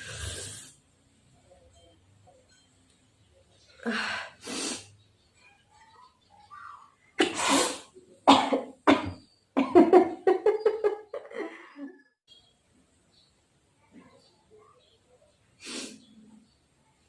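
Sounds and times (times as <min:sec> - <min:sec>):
woman coughing: 0:07.2 - 0:09.9.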